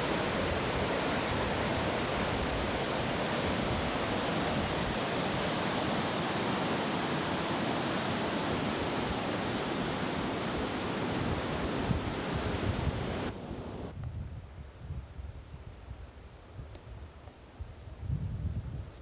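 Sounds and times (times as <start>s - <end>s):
waterfall and river rushing: 0.0s - 13.9s.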